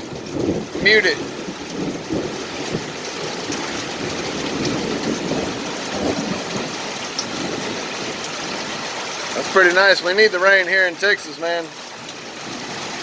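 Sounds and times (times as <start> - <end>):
heavy rain hiss: 0.0 - 13.0.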